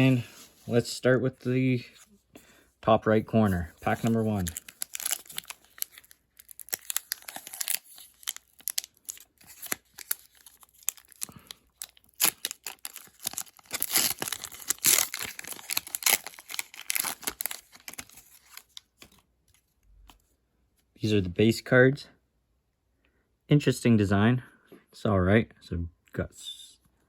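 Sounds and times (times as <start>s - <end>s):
wrapper tearing and crinkling: 3.9s - 19.2s.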